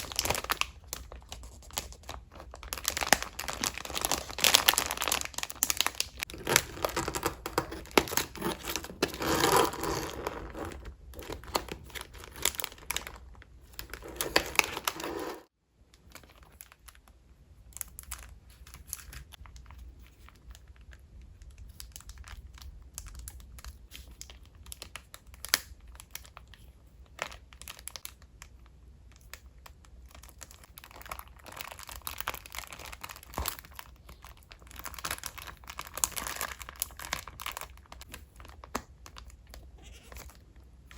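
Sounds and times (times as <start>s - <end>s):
paper rustling and ticks: 0.0s - 15.0s
plastic wrapping crinkling: 0.0s - 17.0s, 30.1s - 40.4s.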